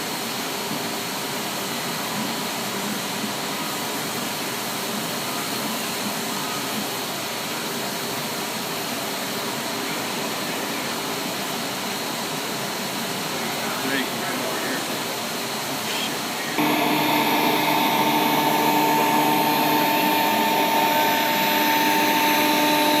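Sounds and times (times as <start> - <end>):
faint high whine: 15.8 - 23.0
industrial machine running: 16.5 - 23.0.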